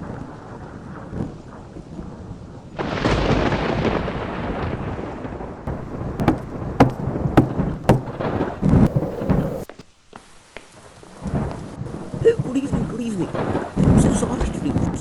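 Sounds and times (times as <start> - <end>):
thunder rumbling: 0.0 - 9.8
steady rain: 0.0 - 15.0
sharp knocks: 5.7 - 9.8.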